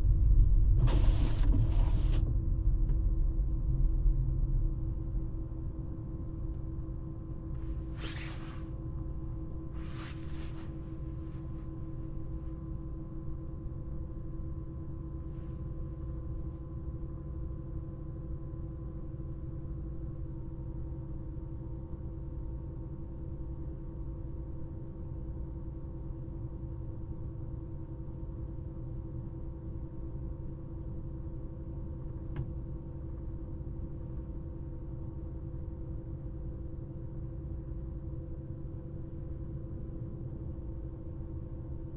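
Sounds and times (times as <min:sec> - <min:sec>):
faint steady hums: 0:00.0 - 0:41.9
short swishes: 0:07.9 - 0:08.7, 0:09.8 - 0:10.8.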